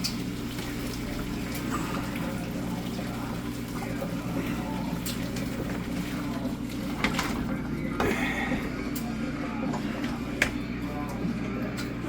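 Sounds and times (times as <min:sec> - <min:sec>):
water running and splashing: 0:00.0 - 0:07.8
low mechanical hum: 0:00.0 - 0:12.0.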